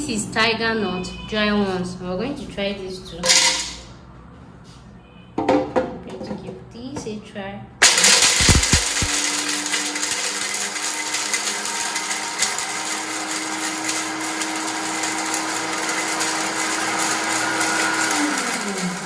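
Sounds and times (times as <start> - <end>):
gritty grinding noise: 8.0 - 12.6
blender motor hum: 8.0 - 19.0.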